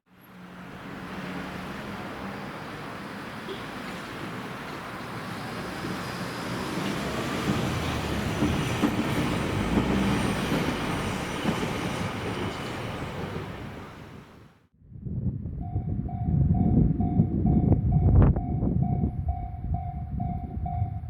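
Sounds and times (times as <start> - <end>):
train wheel and rail noise: 0.2 - 14.5.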